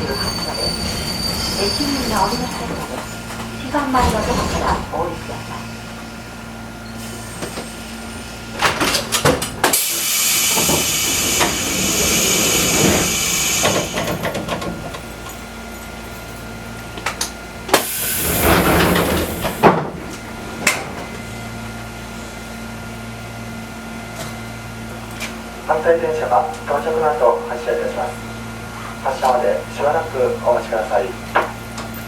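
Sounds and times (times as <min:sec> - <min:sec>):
compressed air hissing: 0:09.8 - 0:14.1, 0:17.8 - 0:19.6.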